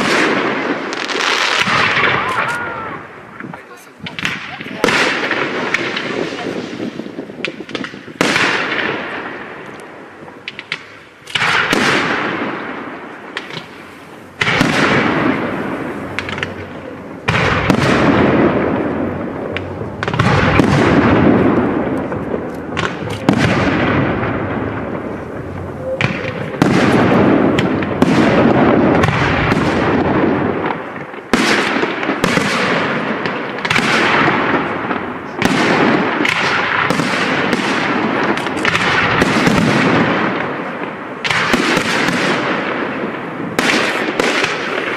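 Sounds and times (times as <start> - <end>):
firework shells bursting: 0.0 - 42.7
firework crackles: 0.0 - 44.9
rumble after bangs: 14.4 - 31.1.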